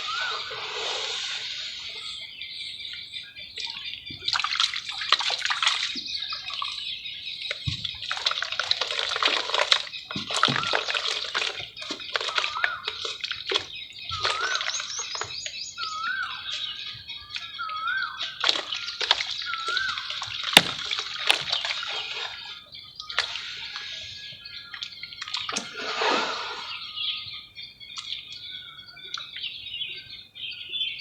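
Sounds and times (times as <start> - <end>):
water sloshing: 0.0 - 2.2, 3.6 - 26.9
clay crumbling and fizzing in water: 8.0 - 15.4, 18.4 - 22.5.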